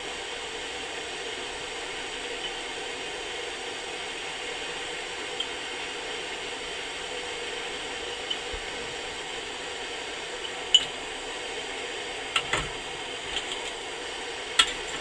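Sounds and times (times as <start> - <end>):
camp stove burner hissing: 0.0 - 15.0.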